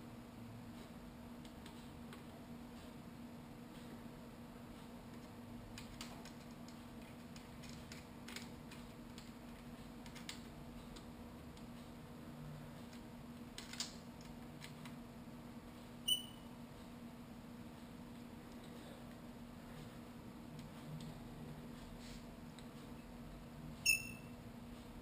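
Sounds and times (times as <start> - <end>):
low steady hum: 0.0 - 25.0
short high-pitched ping: 16.1 - 16.5, 23.8 - 24.3.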